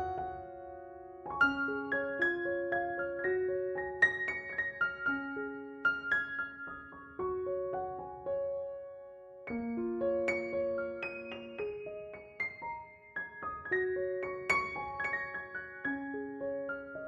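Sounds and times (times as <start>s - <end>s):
slow piano melody: 0.0s - 17.0s.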